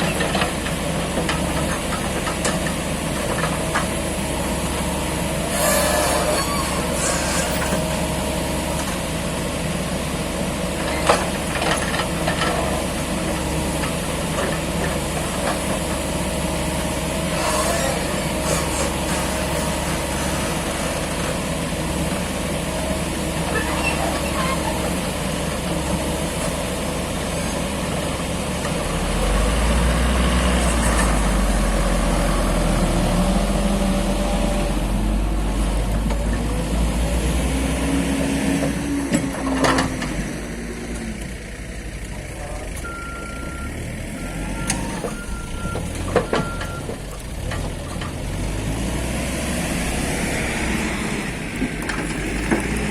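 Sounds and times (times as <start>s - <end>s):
diesel excavator engine: 0.0s - 52.9s
reversing alarm beeps: 42.8s - 46.9s.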